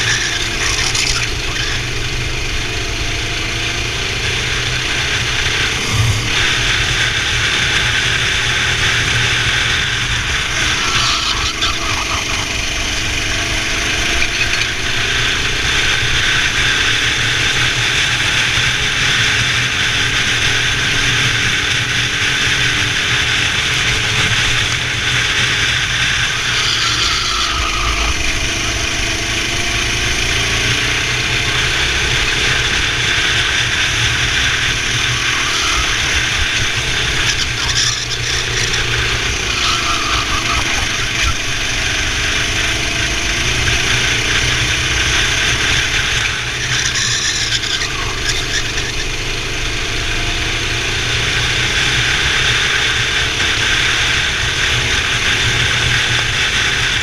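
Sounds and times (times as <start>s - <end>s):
kart engine revving: 0.0s - 57.0s.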